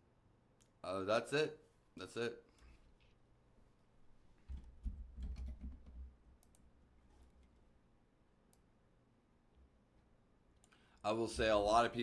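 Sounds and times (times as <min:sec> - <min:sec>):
faint clicking: 0:00.6 - 0:00.8, 0:06.4 - 0:06.7, 0:08.5 - 0:08.7, 0:10.6 - 0:11.0.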